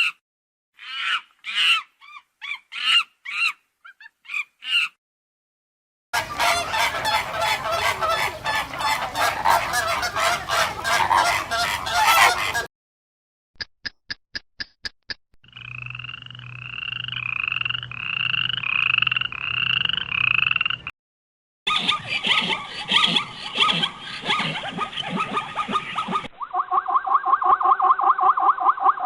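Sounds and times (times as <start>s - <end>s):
croaking calls: 6.2s - 12.7s, 15.5s - 20.9s, 21.7s - 29.0s.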